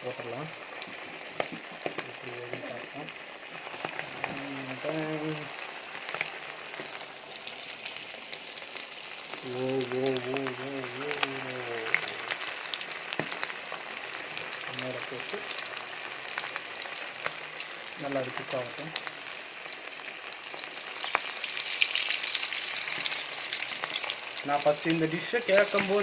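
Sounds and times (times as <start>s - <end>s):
chicken deep-frying in oil: 0.0s - 26.0s.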